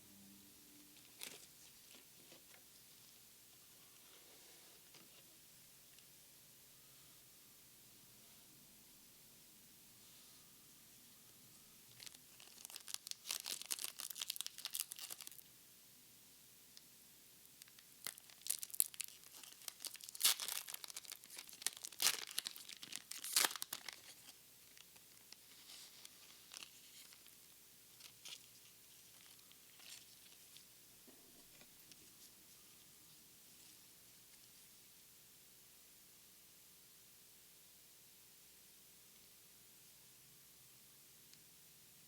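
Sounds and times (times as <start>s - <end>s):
foil wrapper tearing and crinkling: 11.9s - 15.4s, 17.6s - 27.4s, 28.0s - 30.4s.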